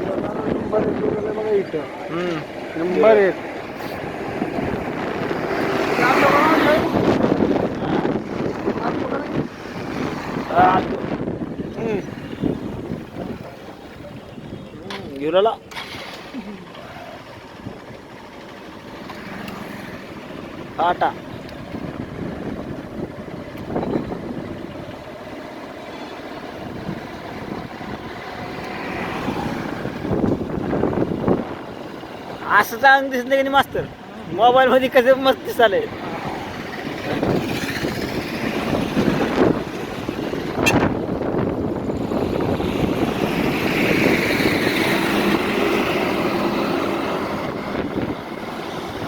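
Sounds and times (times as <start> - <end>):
wind on microphone: 0.0 - 1.6, 3.6 - 14.9, 20.3 - 25.2, 26.4 - 32.4, 35.9 - 49.0
vehicle passing by: 0.0 - 14.2, 14.9 - 25.4, 26.2 - 49.0
road traffic: 0.0 - 49.0.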